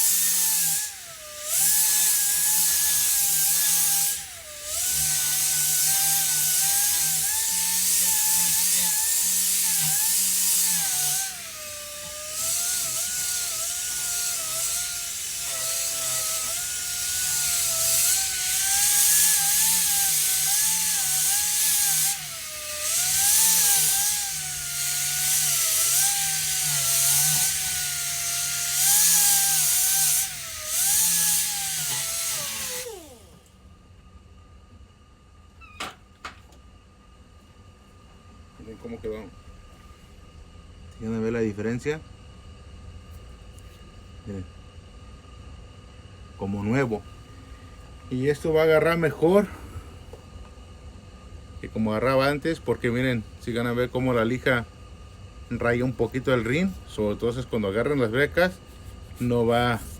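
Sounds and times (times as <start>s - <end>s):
air sander whining: 0.0s - 33.6s, 55.5s - 59.9s.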